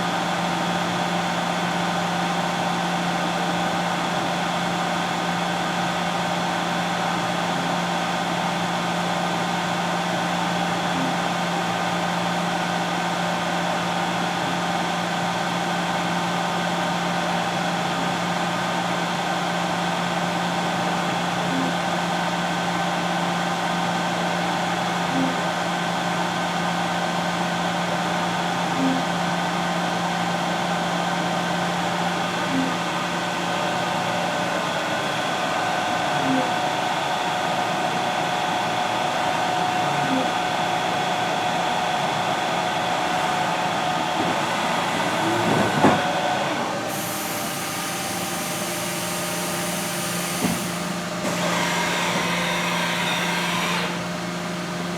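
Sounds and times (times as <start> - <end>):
machining center humming: 30.0 - 54.9
higher hissy machine noise: 31.9 - 54.9.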